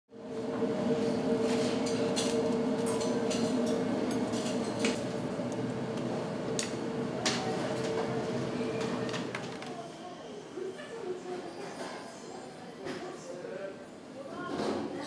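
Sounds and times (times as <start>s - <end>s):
steady equipment hum: 0.2s - 9.6s
utensils and dishes clinking: 1.5s - 5.1s.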